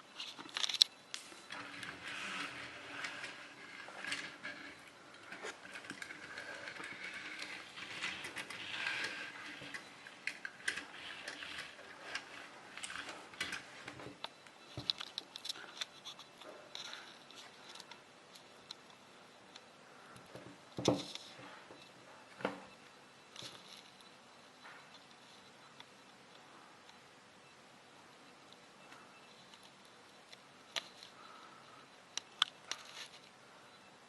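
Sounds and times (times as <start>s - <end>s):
plastic toy cars clicking: 1.6s - 16.2s.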